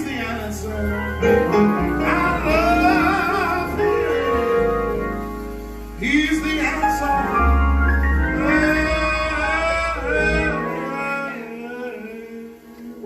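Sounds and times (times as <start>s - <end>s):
gospel music with string chords: 0.0s - 13.0s.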